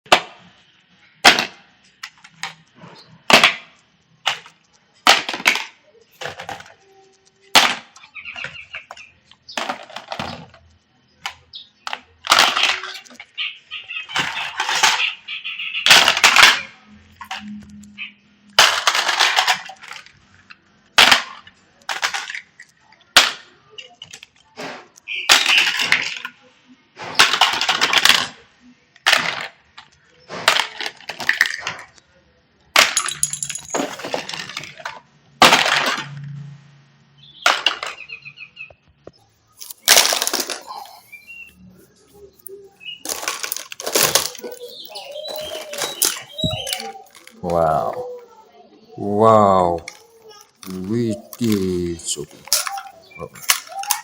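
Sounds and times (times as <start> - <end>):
toy guns clicking and firing: 11.2 - 13.3, 15.8 - 17.5, 18.5 - 20.2, 25.0 - 26.3, 27.2 - 28.4, 39.6 - 41.2, 42.4 - 48.0, 49.6 - 54.0.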